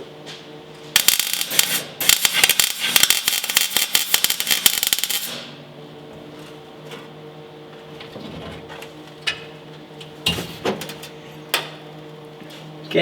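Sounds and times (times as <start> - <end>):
welder arc crackling: 0.9 - 5.6.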